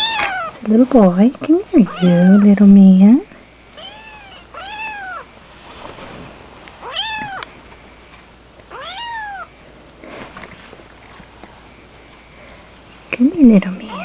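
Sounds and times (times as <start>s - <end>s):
kitten meowing: 0.0s - 0.5s, 1.9s - 2.5s, 3.8s - 5.3s, 6.8s - 7.4s, 8.7s - 9.5s.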